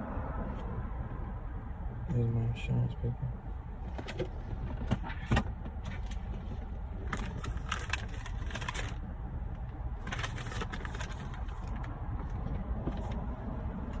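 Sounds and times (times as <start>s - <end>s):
clicks and rustles of handling: 3.9s - 9.0s.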